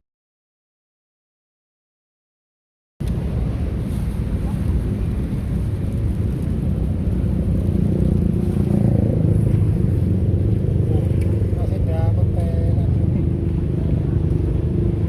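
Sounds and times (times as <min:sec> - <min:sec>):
heavy vehicles passing: 0:03.0 - 0:15.0
highway traffic rumble: 0:03.0 - 0:15.0.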